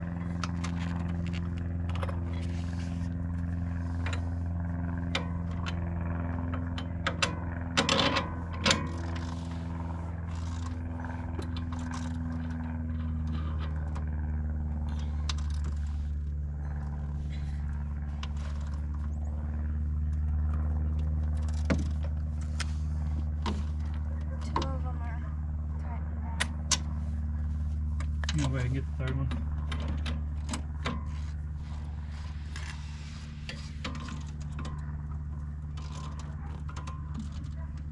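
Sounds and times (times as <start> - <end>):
low machine hum: 0.0 - 37.9
metallic clicks and scrapes: 35.8 - 37.6.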